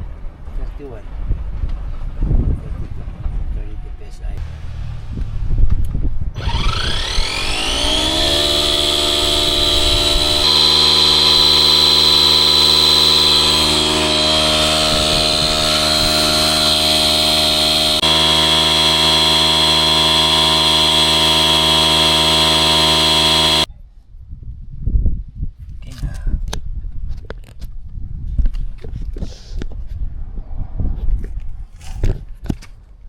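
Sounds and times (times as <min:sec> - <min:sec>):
air compressor motor whining: 0:06.4 - 0:23.7.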